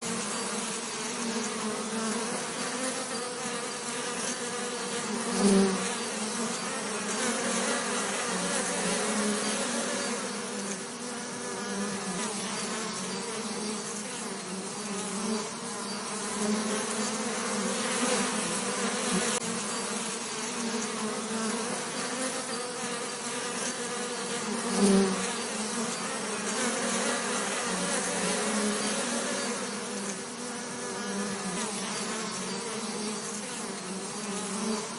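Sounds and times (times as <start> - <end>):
bees buzzing: 0.0 - 34.9.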